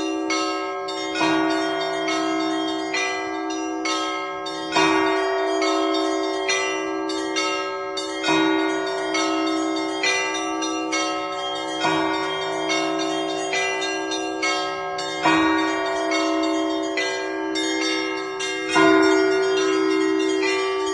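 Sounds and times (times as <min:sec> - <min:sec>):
small church bells chiming: 0:00.0 - 0:20.9.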